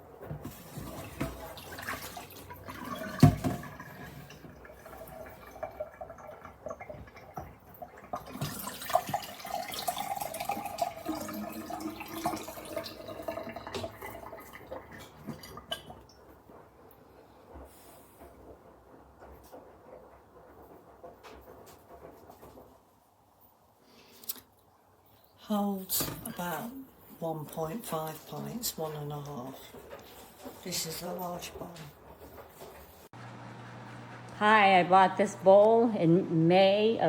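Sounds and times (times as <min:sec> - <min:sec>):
water splashing and dripping: 0:00.3 - 0:16.2.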